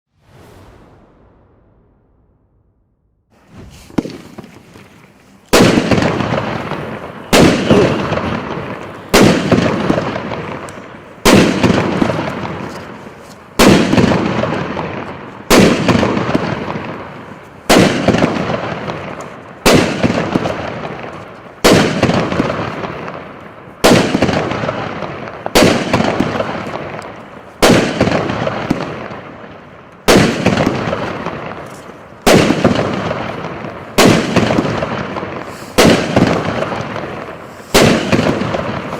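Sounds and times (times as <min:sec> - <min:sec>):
rush of firework burst: 0:00.1 - 0:04.7, 0:34.0 - 0:38.9
firework shots banging: 0:00.2 - 0:38.9.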